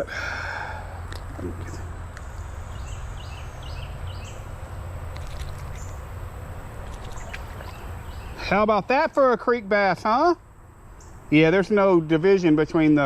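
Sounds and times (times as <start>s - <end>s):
creek water hissing: 0.0s - 9.0s
small bird chirping: 1.6s - 6.1s, 6.8s - 8.6s.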